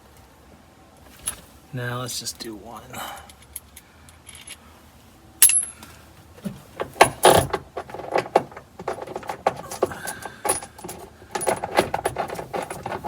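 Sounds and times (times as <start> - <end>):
metal tools clinking and rattling: 3.1 - 4.6, 5.4 - 5.8, 7.0 - 13.0.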